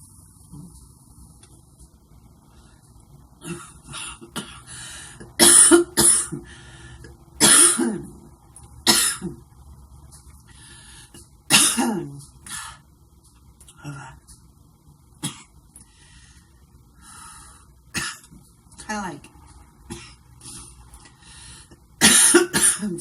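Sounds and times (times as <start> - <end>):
woman coughing: 3.4 - 4.7, 5.4 - 6.4, 7.4 - 8.2, 8.9 - 9.4, 11.5 - 12.8, 22.0 - 23.0.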